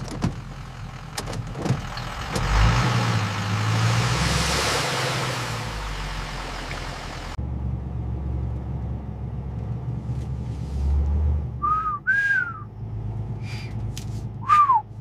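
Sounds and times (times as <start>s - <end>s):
whistled notes: 11.6s - 12.7s, 14.4s - 14.9s.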